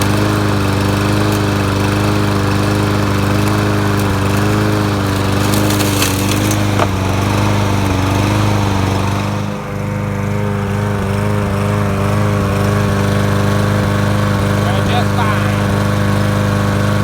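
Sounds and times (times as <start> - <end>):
lawnmower engine running: 0.0 - 17.0.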